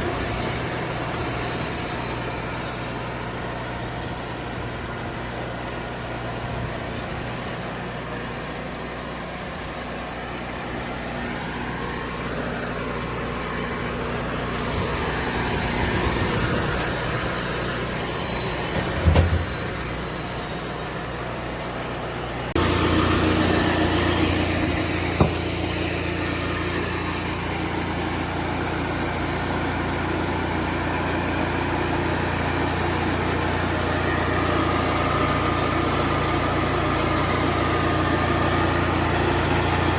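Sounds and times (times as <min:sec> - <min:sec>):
sawmill engine running: 0:00.0 - 0:39.9
sharp knocks: 0:18.7 - 0:20.0, 0:25.1 - 0:25.6.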